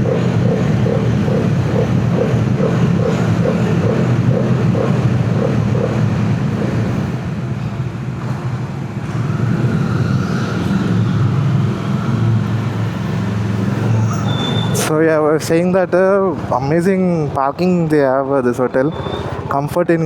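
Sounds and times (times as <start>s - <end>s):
motorcycle engine running: 0.0s - 7.5s.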